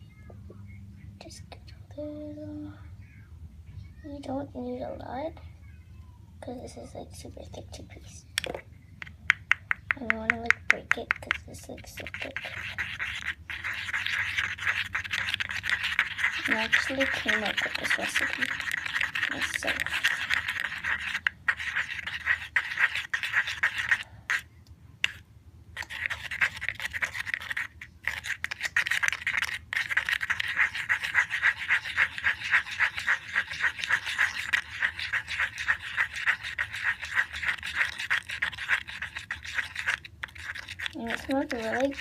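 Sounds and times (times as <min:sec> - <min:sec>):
brush scraping slime in a pot: 0:09.4 - 0:25.2, 0:25.8 - 0:42.0.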